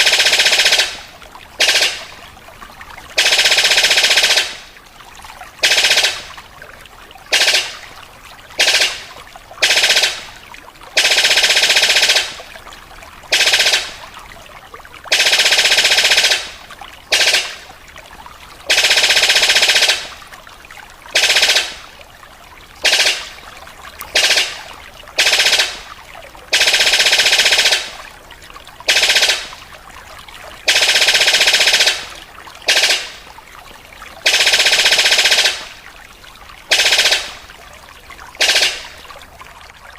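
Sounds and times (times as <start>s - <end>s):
bird rattling call: 22.8s - 23.4s, 38.4s - 39.0s.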